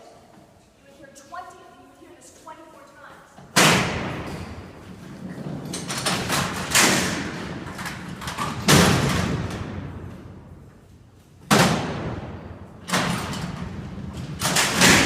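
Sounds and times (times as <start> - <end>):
steel cell doors clanging shut: 3.5 - 10.0, 11.5 - 15.0.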